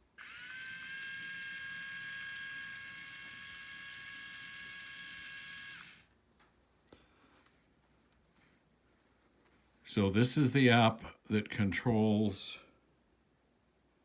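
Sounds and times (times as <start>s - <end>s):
small motor whining: 0.1s - 6.1s.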